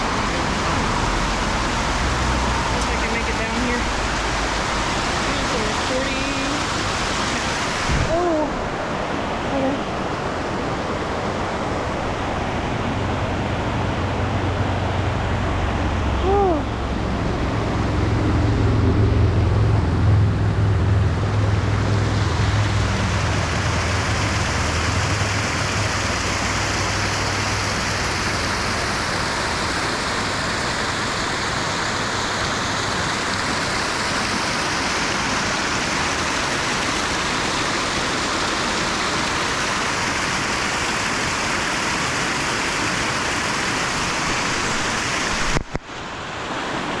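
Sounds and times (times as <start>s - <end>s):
stream rushing over rocks: 0.0s - 47.0s
low rumble: 12.8s - 23.9s.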